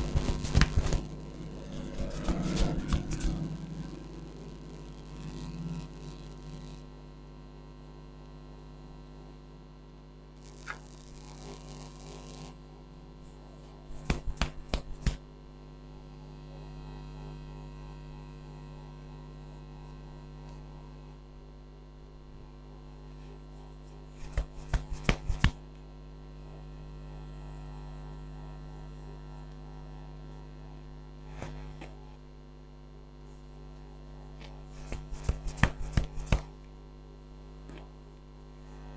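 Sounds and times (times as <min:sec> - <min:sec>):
rapid slaps of head massage: 0:00.0 - 0:03.6, 0:13.8 - 0:15.3, 0:23.6 - 0:25.6, 0:34.4 - 0:36.7
electrical mains hum: 0:00.0 - 0:38.9.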